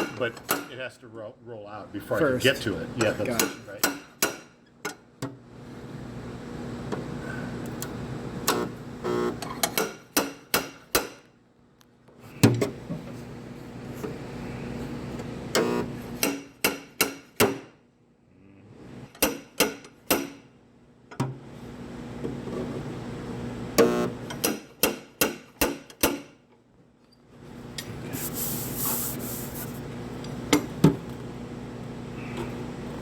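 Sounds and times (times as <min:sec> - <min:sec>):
steady hum: 0:07.2 - 0:09.4.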